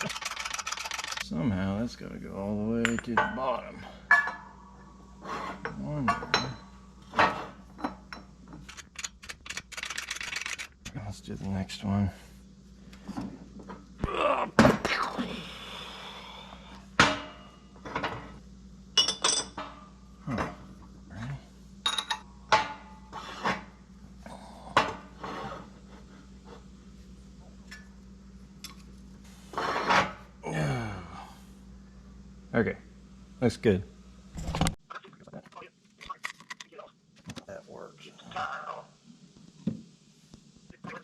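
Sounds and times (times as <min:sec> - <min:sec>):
metal parts clinking: 0:00.0 - 0:01.2, 0:08.6 - 0:10.8
faint steady hum: 0:00.0 - 0:41.0.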